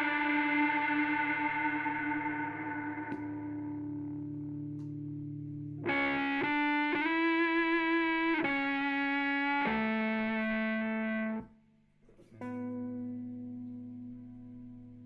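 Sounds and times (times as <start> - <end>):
distorted electric guitar notes: 0.0 - 11.6.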